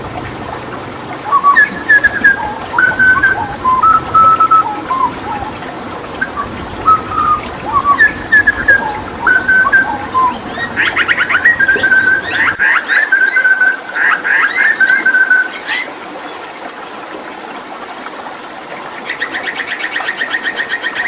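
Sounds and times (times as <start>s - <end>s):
bird singing whistled notes: 1.3s - 5.6s, 6.2s - 15.8s.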